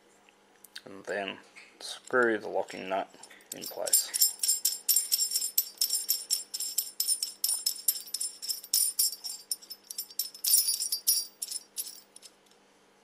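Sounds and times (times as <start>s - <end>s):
metal parts clinking: 3.2s - 12.5s.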